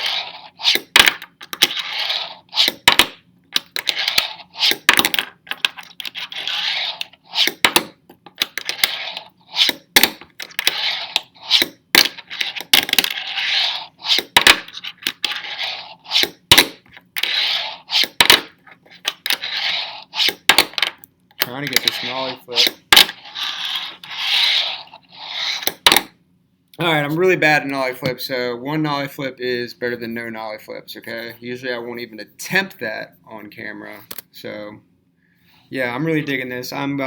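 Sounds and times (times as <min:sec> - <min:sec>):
fingerboard wheels rolling: 0:00.0 - 0:20.8, 0:21.4 - 0:26.1.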